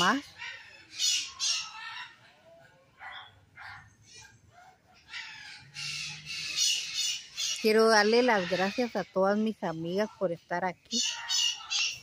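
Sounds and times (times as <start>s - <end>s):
dogs barking: 0.0s - 2.2s, 2.9s - 8.6s, 11.0s - 12.0s
harsh bird squawks: 0.0s - 2.2s, 3.0s - 10.1s, 10.9s - 12.0s.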